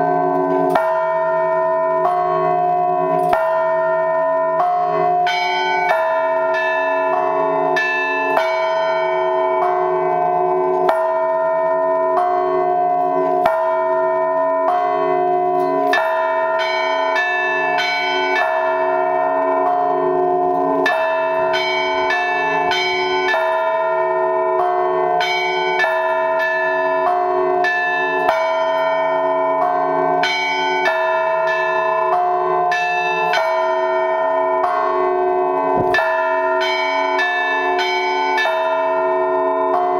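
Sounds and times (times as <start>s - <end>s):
church bells ringing: 0.0s - 39.9s.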